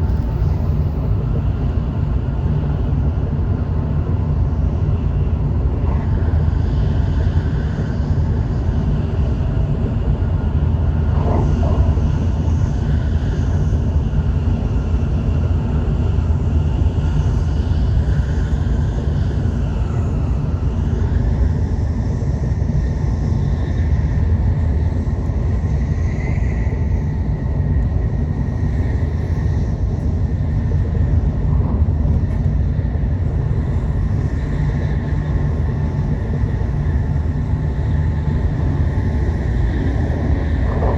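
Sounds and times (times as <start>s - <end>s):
train running gear rumble: 0.0s - 17.7s, 19.7s - 40.9s
faint train whines: 0.0s - 40.9s.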